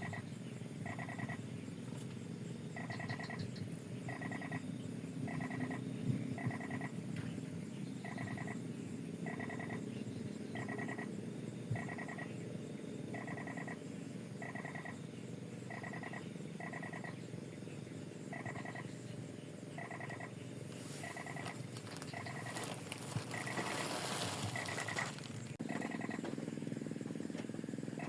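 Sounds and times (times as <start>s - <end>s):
animal pulsed calls: 0.0s - 1.5s, 2.8s - 4.7s, 5.3s - 7.0s, 8.0s - 9.9s, 10.5s - 12.4s, 13.1s - 13.8s, 14.4s - 15.0s, 15.6s - 17.3s, 18.2s - 19.0s, 19.7s - 26.3s.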